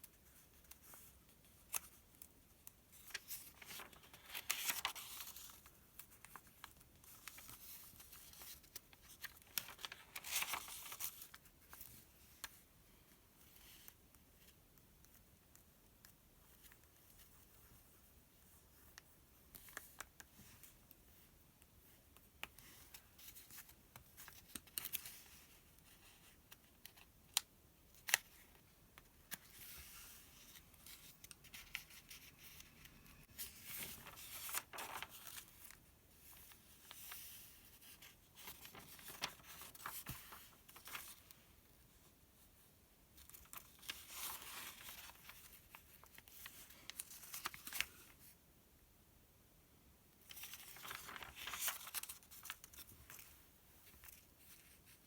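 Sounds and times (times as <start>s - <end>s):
paper pages rustling: 0.0s - 12.7s, 22.4s - 48.4s, 50.2s - 55.0s.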